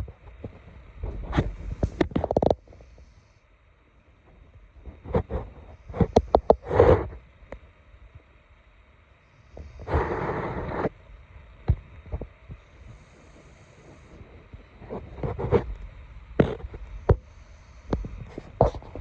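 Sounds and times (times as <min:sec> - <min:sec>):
cat snoring: 0:09.5 - 0:11.0.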